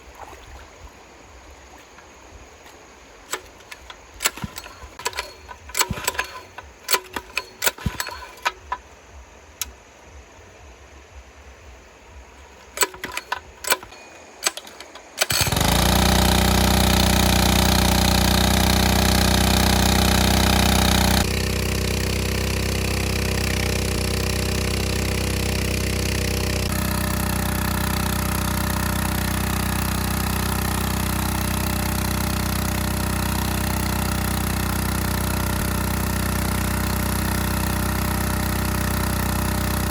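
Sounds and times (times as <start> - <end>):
small water pump engine: 0.0 - 10.8, 12.2 - 39.9.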